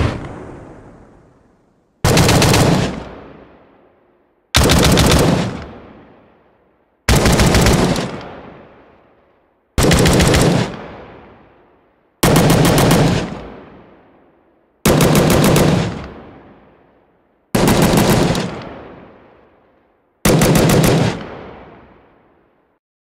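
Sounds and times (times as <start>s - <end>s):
rifle firing automatic bursts: 2.1s - 3.1s, 4.6s - 5.7s, 7.1s - 8.2s, 9.8s - 10.8s, 12.2s - 13.4s, 14.8s - 16.0s, 17.6s - 18.7s, 20.2s - 21.3s.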